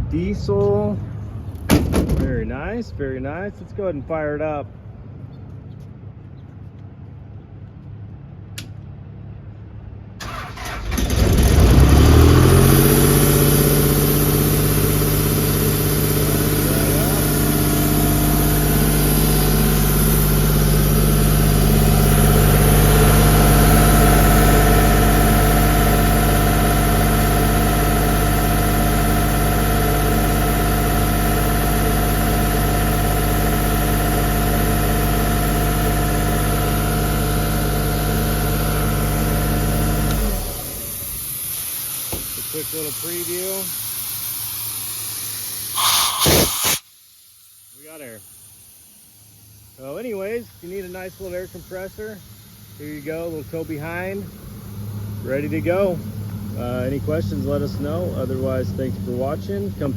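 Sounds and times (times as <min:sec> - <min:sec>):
diesel engine starting and idling: 0:10.1 - 0:46.1.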